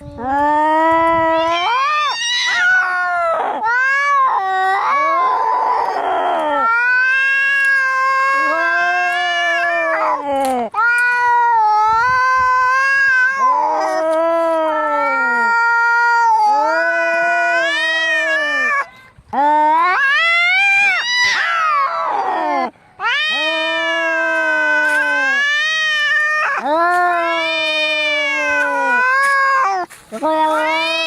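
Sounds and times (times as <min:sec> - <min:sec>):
cats caterwauling: 0:00.0 - 0:31.0.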